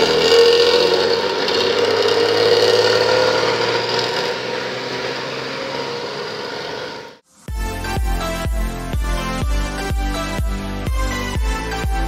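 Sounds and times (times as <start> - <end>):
bus engine rough exhaust note: 0.0 - 7.2.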